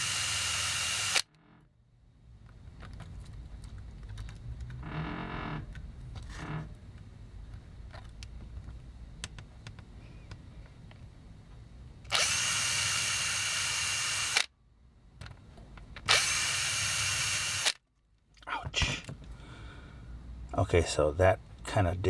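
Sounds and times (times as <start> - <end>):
power drill whining: 0.0 - 1.6, 12.1 - 14.5, 16.1 - 17.8.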